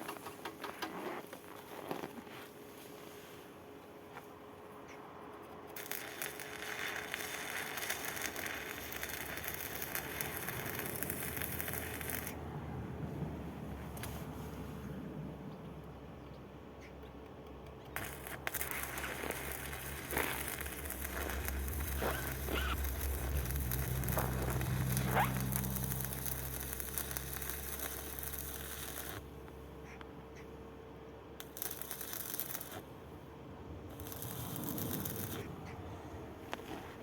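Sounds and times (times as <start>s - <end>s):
arc welding crackling: 5.5s - 12.5s, 17.8s - 29.6s, 31.4s - 37.0s
low hum: 5.9s - 37.0s.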